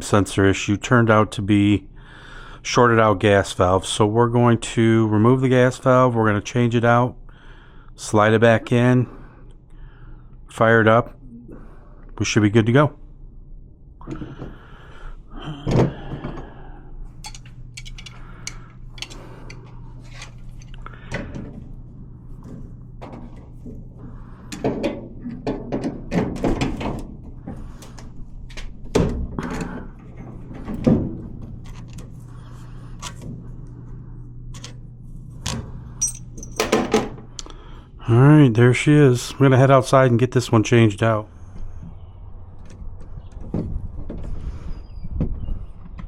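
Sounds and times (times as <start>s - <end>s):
steady low hum: 0.0s - 46.0s
hand tools clunking on metal: 17.2s - 21.5s.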